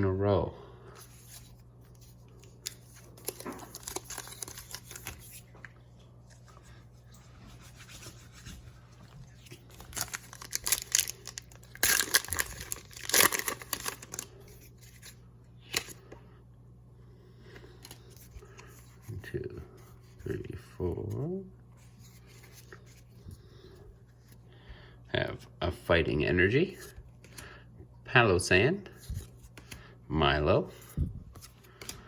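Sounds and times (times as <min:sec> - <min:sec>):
foil wrapper crinkling and tearing: 0:02.5 - 0:05.4, 0:09.4 - 0:14.4.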